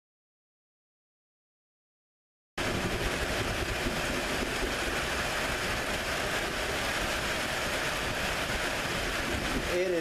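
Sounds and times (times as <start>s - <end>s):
heavy rain hiss: 2.6s - 10.0s
wind buffeting rumble: 2.6s - 10.0s.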